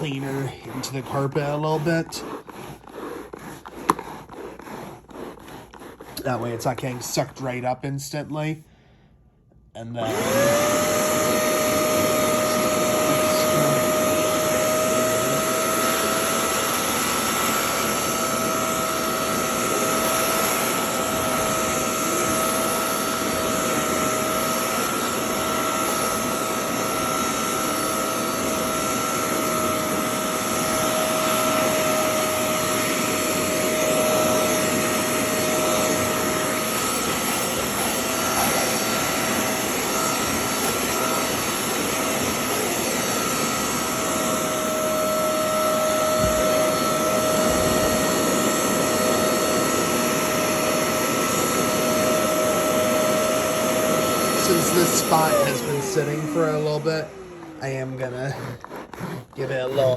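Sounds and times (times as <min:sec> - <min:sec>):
spot cleaner suction motor whine: 0:00.0 - 0:07.6, 0:09.9 - 0:59.9.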